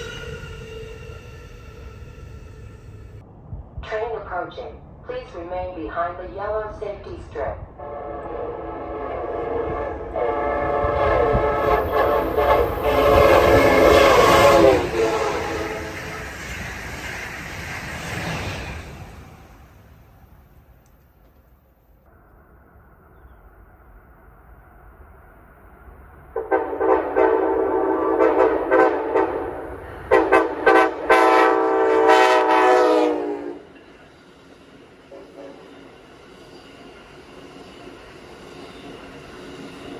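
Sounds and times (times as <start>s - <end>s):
low rumble of train: 0.0s - 39.9s
train air horn chord: 7.8s - 16.1s, 26.4s - 33.7s.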